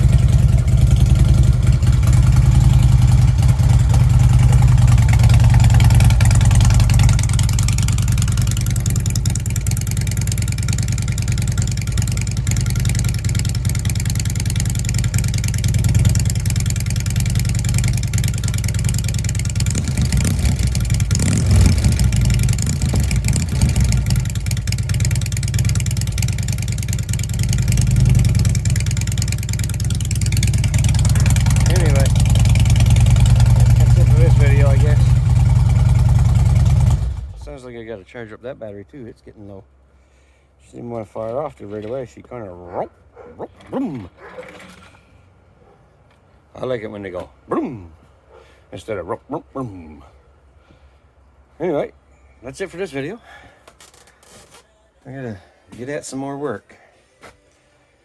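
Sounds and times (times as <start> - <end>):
motorcycle engine idling: 0.0 - 37.6.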